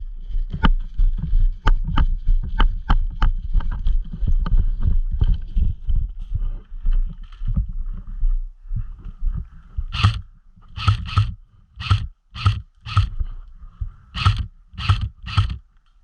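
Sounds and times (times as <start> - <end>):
wind rumble on microphone: 0.0 - 15.6
sharp clicks and knocks: 9.9 - 13.2, 14.2 - 16.0.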